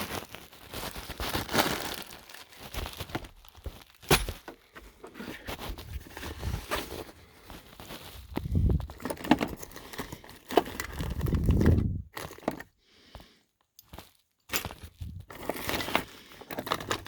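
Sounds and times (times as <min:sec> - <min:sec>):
rustling of gear: 0:00.0 - 0:17.0
clicks of objects handled: 0:03.0 - 0:05.8, 0:13.6 - 0:17.0.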